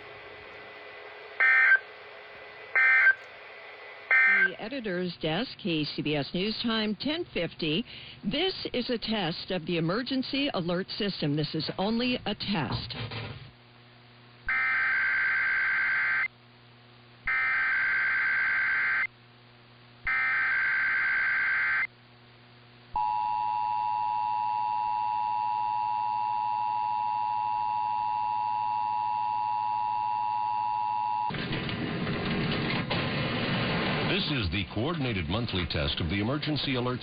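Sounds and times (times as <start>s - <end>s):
two-tone attention signal: 1.4s - 1.8s, 2.8s - 3.2s, 4.1s - 4.6s
digital data header bursts: 2.7s - 3.2s, 4.1s - 4.6s.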